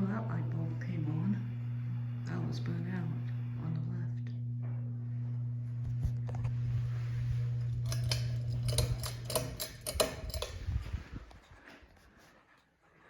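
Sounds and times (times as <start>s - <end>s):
ceiling fan motor humming: 0.0s - 12.2s
metallic clicks and rattling: 7.8s - 11.5s.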